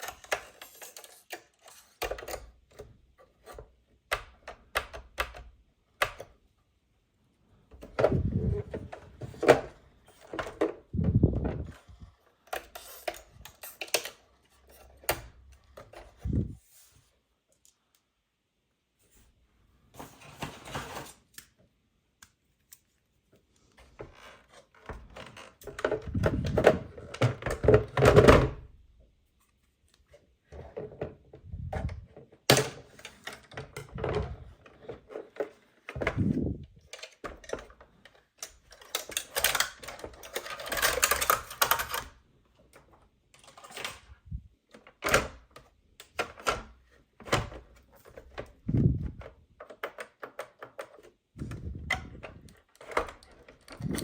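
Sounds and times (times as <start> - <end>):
plastic toy clicking and rattling: 0.0 - 2.9, 11.7 - 15.3, 36.8 - 42.2.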